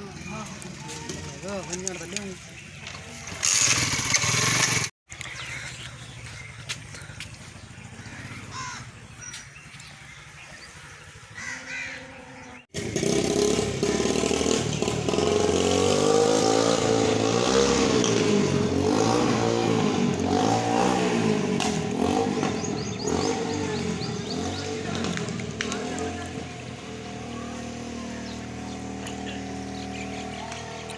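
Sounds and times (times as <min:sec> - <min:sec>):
bird calls: 0:05.1 - 0:12.7, 0:20.2 - 0:30.9.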